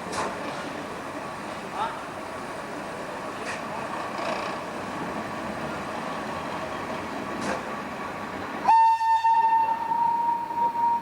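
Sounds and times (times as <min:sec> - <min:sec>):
train rumbling: 0:00.0 - 0:11.0
train horn: 0:08.6 - 0:11.0.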